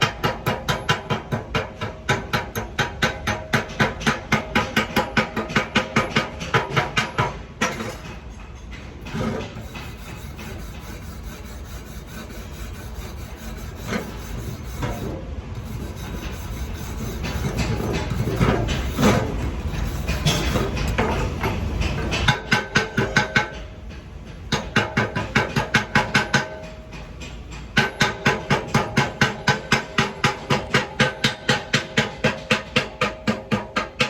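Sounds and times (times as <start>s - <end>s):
fast rhythmic scraping: 9.6s - 20.8s.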